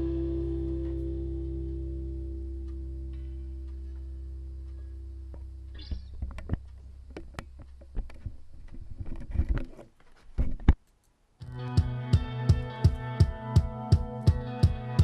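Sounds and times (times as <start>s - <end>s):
held low chord: 0.0s - 5.9s, 11.4s - 15.0s.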